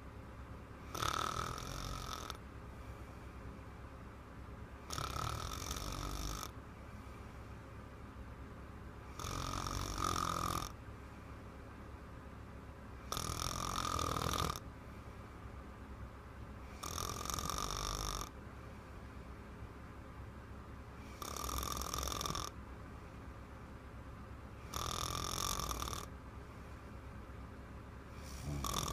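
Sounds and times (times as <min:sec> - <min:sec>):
girl snoring loudly: 0:00.9 - 0:02.4, 0:04.9 - 0:06.5, 0:09.2 - 0:10.7, 0:13.1 - 0:14.6, 0:16.8 - 0:18.3, 0:21.2 - 0:22.5, 0:24.7 - 0:26.1, 0:28.2 - 0:28.9.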